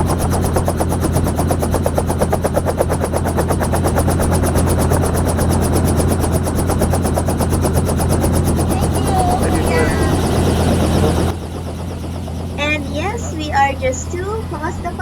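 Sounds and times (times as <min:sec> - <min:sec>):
helicopter rotor chopping: 0:00.0 - 0:15.0
low engine hum: 0:06.2 - 0:15.0.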